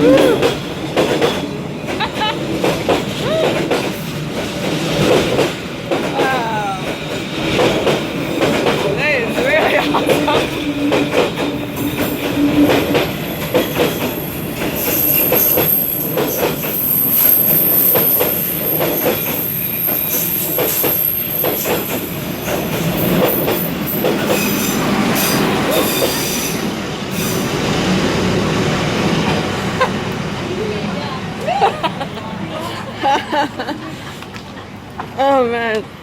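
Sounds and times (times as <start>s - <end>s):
train wheels clicking over rail joints: 0.0s - 6.2s, 6.8s - 27.8s
high wheel squeal: 11.7s - 27.6s.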